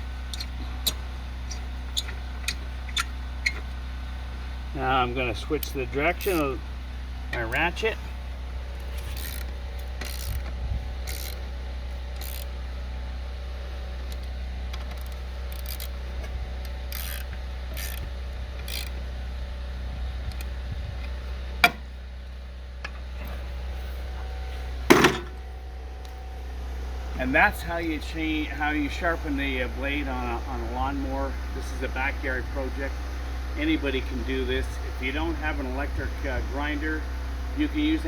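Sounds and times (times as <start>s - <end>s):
low hum: 0.0s - 38.0s
hand ratchet clicking: 5.6s - 6.6s, 8.8s - 11.5s, 12.1s - 12.6s, 14.1s - 19.0s.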